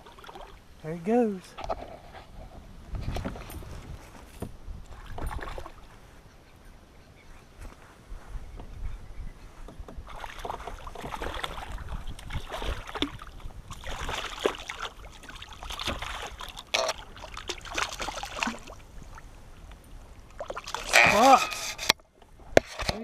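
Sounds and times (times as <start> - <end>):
fishing gear clicking and rustling: 20.8 - 22.0.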